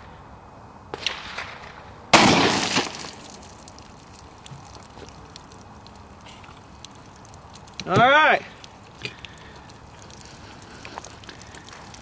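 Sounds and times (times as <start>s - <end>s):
pistol shot: 0.9s - 3.2s.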